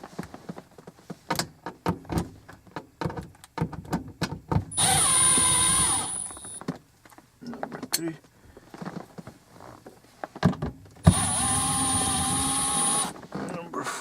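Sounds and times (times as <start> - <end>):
impact tool whining: 4.7 - 6.6, 11.1 - 13.2.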